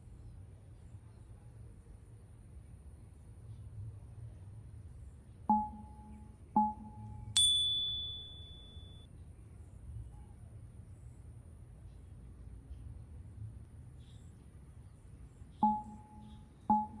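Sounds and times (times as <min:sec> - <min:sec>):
chime dings: 0:05.5 - 0:09.1, 0:15.6 - 0:17.0.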